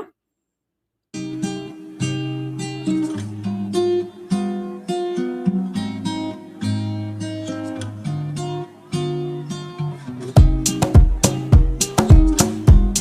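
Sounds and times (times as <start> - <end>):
plucked acoustic guitar melody: 1.2 - 13.0
beat with deep bass: 10.4 - 13.0.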